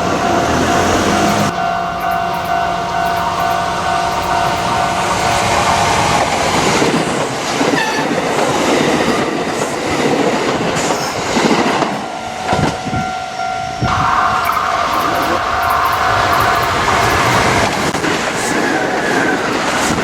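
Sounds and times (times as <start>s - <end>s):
crossing warning bell ringing: 0.0s - 9.6s, 11.4s - 17.9s
train wheels clacking on rails: 0.0s - 20.0s.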